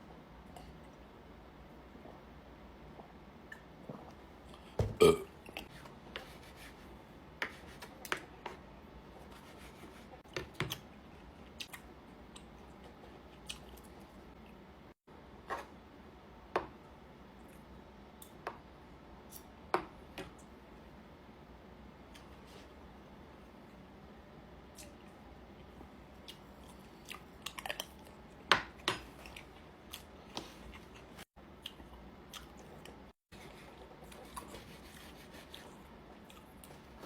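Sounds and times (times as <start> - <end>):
chewing with wet mouth clicks: 26.2 - 28.2, 30.7 - 33.0.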